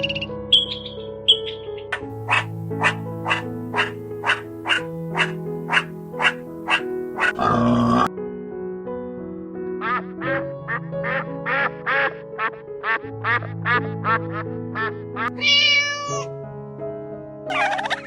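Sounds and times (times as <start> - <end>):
background music with held notes: 0.0 - 18.0
duck quacking: 2.3 - 8.1, 10.7 - 15.6.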